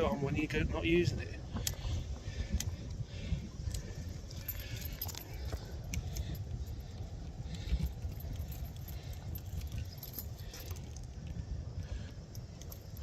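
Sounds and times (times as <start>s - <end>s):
wind buffeting microphone: 0.0s - 13.0s
keys jingling: 3.7s - 11.2s, 12.4s - 13.0s.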